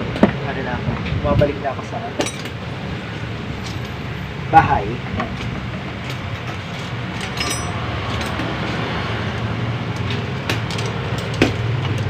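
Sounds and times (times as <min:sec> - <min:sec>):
low hum of street noise: 0:00.0 - 0:12.0
light metallic clinks: 0:02.2 - 0:02.6, 0:06.0 - 0:08.4.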